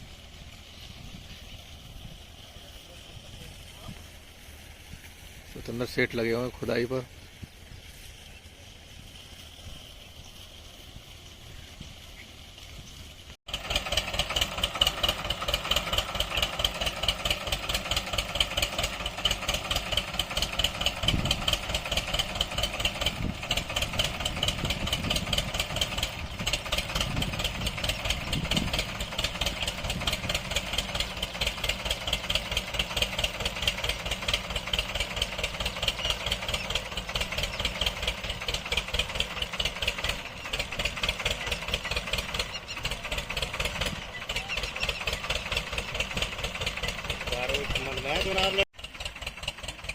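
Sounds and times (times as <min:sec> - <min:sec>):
tractor engine chugging: 0:00.0 - 0:49.9.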